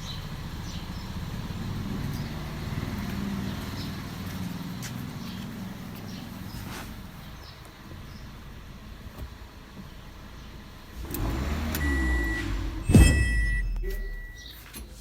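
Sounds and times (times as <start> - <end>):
car engine running: 0.0 - 14.5.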